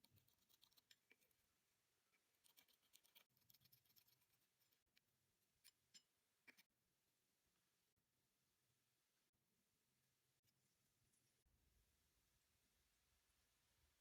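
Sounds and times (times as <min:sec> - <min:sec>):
small tools clicking and scratching: 0:00.0 - 0:01.4, 0:02.1 - 0:06.7.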